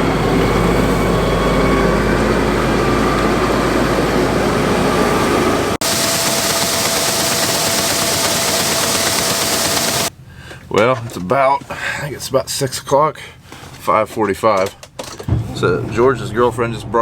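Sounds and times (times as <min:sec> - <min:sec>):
farm machinery engine running: 0:00.0 - 0:10.1
machine whine: 0:00.0 - 0:10.1.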